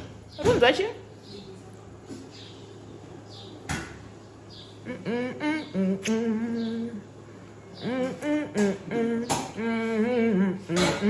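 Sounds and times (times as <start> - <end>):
person singing: 4.8 - 7.1.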